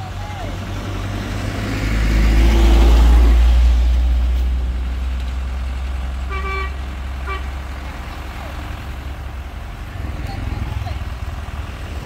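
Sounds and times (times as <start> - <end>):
vehicle engine rumbling: 0.0 - 12.0
car horn toots: 6.3 - 7.5.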